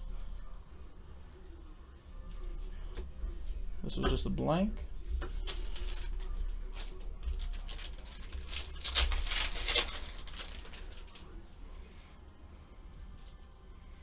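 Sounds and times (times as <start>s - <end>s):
paper and foil crinkling: 0.0s - 1.6s, 2.2s - 14.0s.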